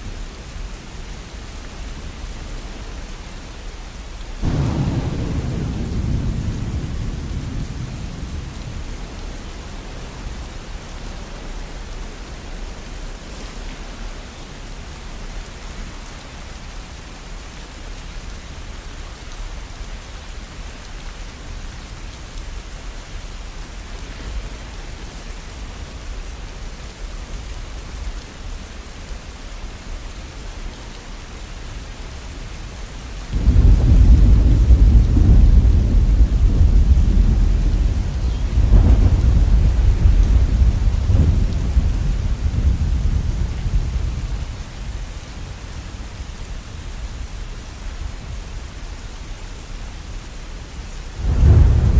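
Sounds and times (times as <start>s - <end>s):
steady rain falling: 0.0s - 51.9s
loud peal of thunder: 4.4s - 8.9s, 33.4s - 44.4s, 51.2s - 51.9s
rumble of thunder: 4.4s - 10.6s, 33.3s - 46.2s, 51.2s - 51.9s.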